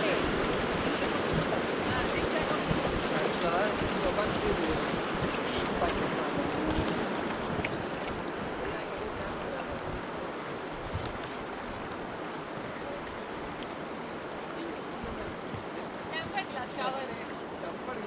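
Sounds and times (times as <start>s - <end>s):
river water rushing: 0.0s - 18.0s
water splashes: 0.0s - 18.0s.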